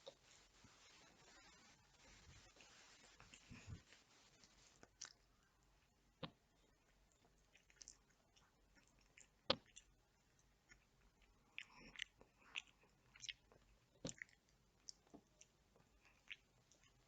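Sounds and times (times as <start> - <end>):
chewing with wet mouth smacks: 4.8 - 17.0.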